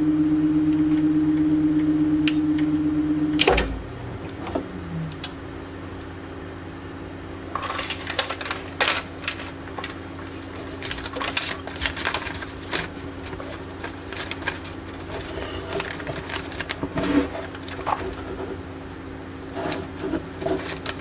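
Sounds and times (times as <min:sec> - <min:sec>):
case fan humming: 0:00.0 - 0:21.0
sharp clicks and rattles: 0:07.5 - 0:18.4.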